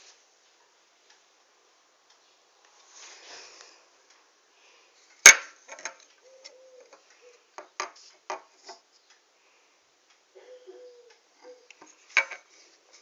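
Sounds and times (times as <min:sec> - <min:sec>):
sharp wooden snap: 0:05.3 - 0:06.0.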